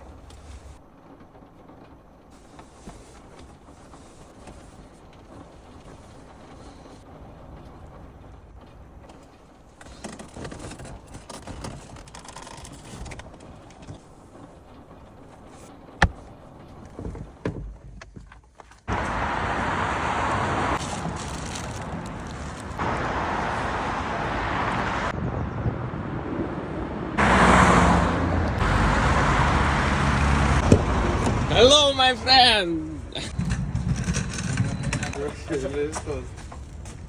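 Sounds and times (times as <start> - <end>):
rain falling on a car: 0.0 - 17.5, 18.9 - 25.0.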